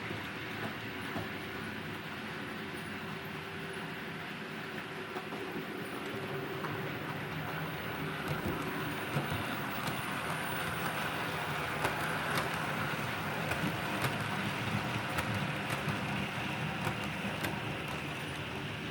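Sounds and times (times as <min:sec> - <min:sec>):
model train motor and wheels humming: 0:00.0 - 0:18.9
wheels clicking over rail joints: 0:07.5 - 0:18.9.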